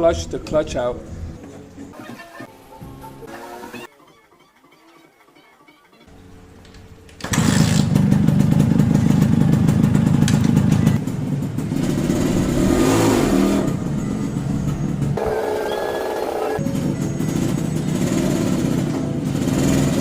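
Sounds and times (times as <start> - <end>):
motorcycle engine running: 7.2 - 20.0.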